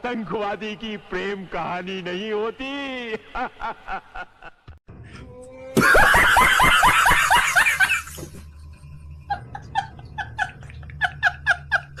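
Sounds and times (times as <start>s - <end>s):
person laughing: 5.7s - 8.4s, 9.3s - 12.0s
high he-he laughter: 5.8s - 8.3s, 9.3s - 12.0s.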